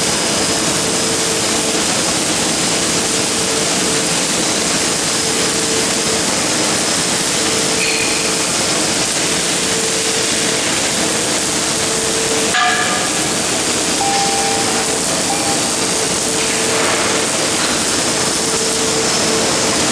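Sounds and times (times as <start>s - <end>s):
welding arc crackling and hissing: 0.0s - 19.9s.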